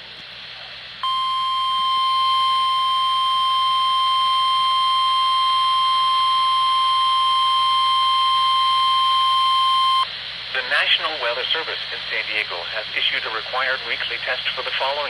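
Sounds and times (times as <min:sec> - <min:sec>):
light radio hiss: 0:00.0 - 0:15.0
steady high alarm tone: 0:01.0 - 0:10.1.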